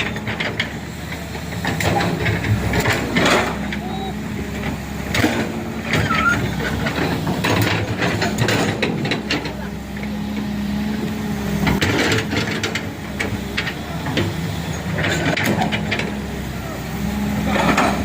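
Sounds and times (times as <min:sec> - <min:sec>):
heavy vehicle engine running: 0:00.0 - 0:18.0
voices calling out: 0:00.0 - 0:18.0
knocks and clatter: 0:04.6 - 0:09.6.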